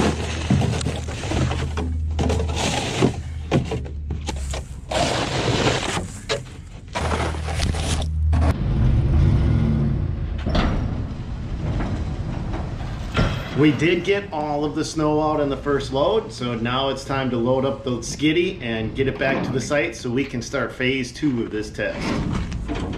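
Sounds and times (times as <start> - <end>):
bucket scraping and clunking on steel: 0.0 - 8.5, 21.8 - 22.9
diesel engine under load: 0.0 - 19.9.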